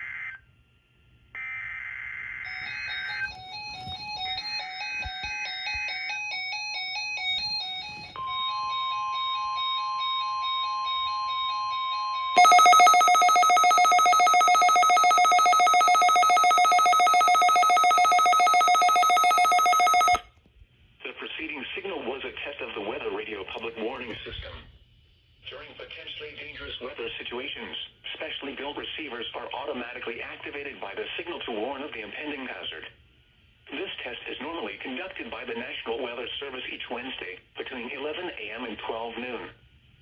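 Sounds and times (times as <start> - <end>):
steady warning alarm tone: 12.2 - 20.2
pulsing electronic alert tone: 12.4 - 20.2.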